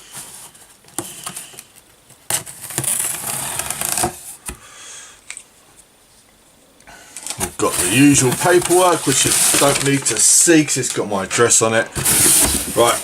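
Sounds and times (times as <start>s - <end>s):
knife tearing through tape and cardboard: 2.3s - 4.2s.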